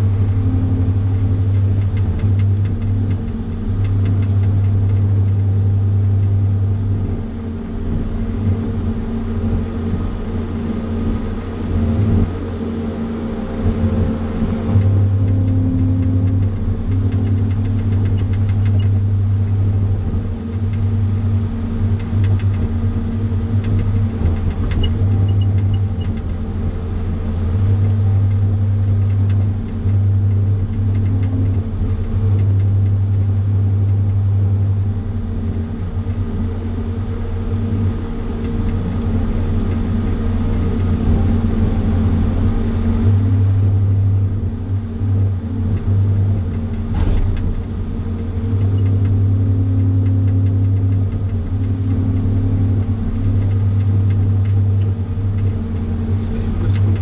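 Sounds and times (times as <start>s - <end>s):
firewood processor engine running: 54.3s - 57.0s.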